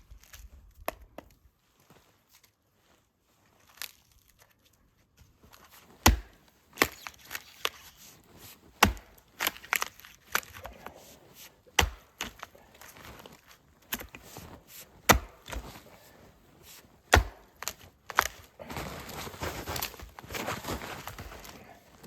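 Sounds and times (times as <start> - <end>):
axe chopping wood: 6.0 - 7.2, 8.8 - 10.7, 11.7 - 13.2, 15.0 - 15.9, 17.0 - 18.3
wood knocking and cracking: 6.0 - 7.8, 8.7 - 10.7, 11.8 - 14.2, 15.0 - 15.9, 17.0 - 18.4.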